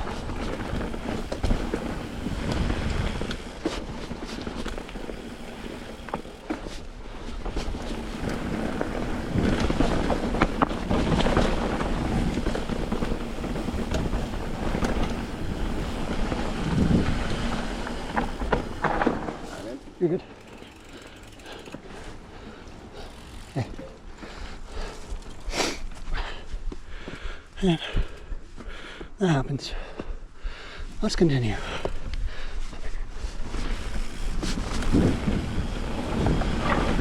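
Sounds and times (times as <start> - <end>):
mountain bike rumbling over rocks: 0.0 - 25.6, 33.4 - 37.0
wind buffeting microphone: 7.4 - 18.8, 32.0 - 37.0.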